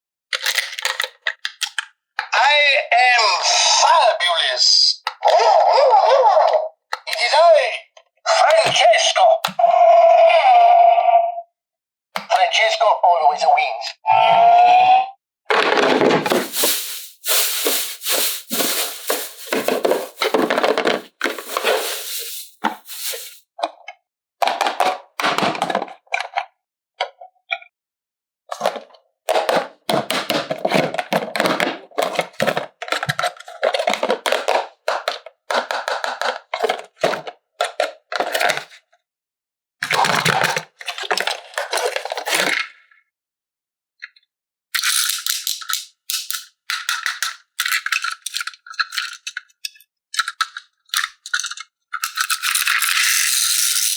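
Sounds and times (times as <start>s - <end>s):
plastic toy parts clicking and scraping: 0.3s - 1.9s, 6.9s - 7.2s, 15.6s - 23.4s, 30.1s - 38.8s, 44.8s - 53.9s.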